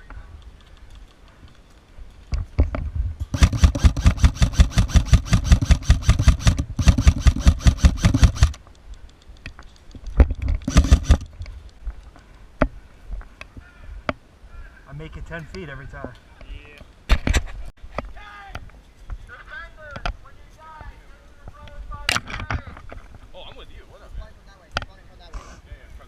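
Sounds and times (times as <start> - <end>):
airsoft rifle automatic fire: 3.3 - 8.6, 10.6 - 11.2.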